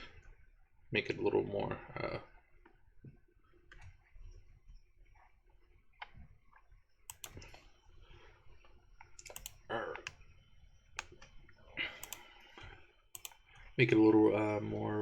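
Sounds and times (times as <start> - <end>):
keyboard and mouse clicking: 7.0 - 7.7, 9.0 - 10.3, 10.9 - 13.7.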